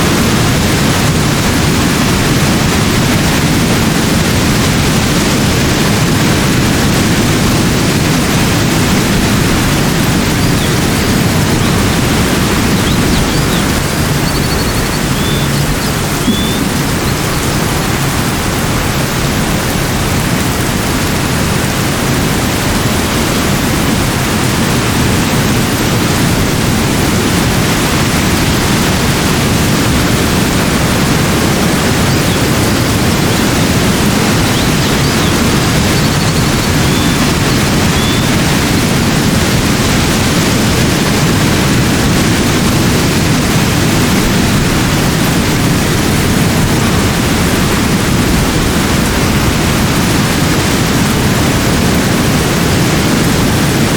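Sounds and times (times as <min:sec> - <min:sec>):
heavy rain falling: 0:00.0 - 0:53.9
faint high chirps: 0:09.7 - 0:18.5, 0:31.4 - 0:38.4.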